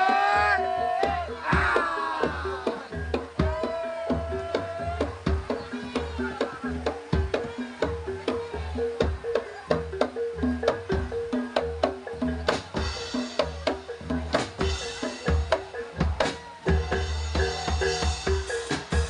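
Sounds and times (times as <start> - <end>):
repeating pitched melodic pattern: 5.1 - 19.0.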